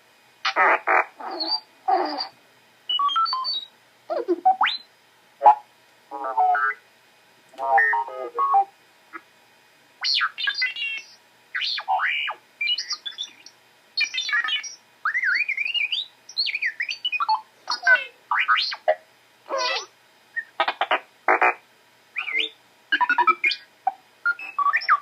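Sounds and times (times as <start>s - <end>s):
robot electronic beeps and whistles: 0.5s - 5.6s, 7.7s - 8.7s, 10.0s - 19.0s, 19.6s - 20.7s, 22.2s - 23.6s, 24.3s - 25.0s.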